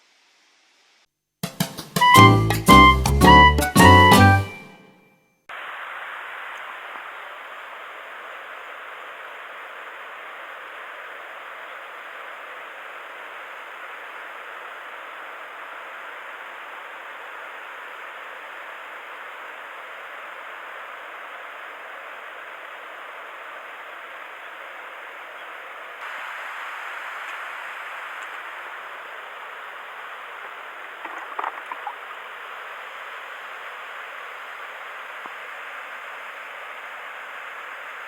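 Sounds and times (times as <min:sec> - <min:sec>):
mountain stream rushing: 0:05.5 - 0:38.0.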